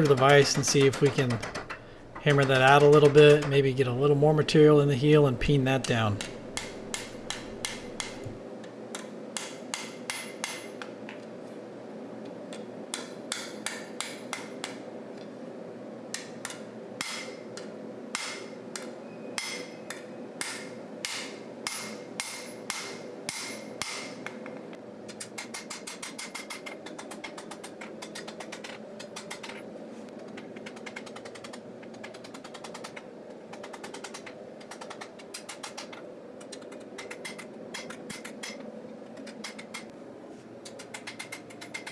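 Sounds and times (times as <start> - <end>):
steady background hum: 0.0 - 41.9
hammer striking steel blade: 5.8 - 8.4.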